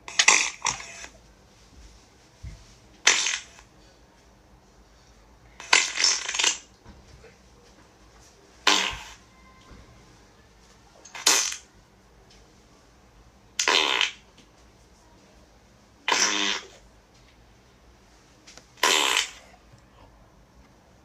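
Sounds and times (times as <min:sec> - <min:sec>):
farts: 0:05.6 - 0:06.7, 0:08.6 - 0:09.2, 0:11.2 - 0:11.6, 0:13.6 - 0:14.2, 0:16.0 - 0:16.8, 0:18.8 - 0:19.6.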